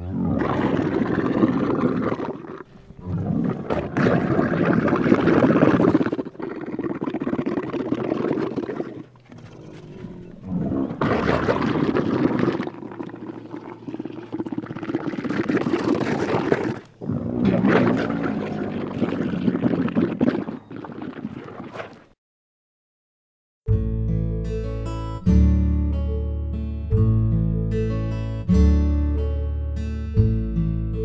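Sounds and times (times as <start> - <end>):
camel gargling call: 0.0 - 22.1.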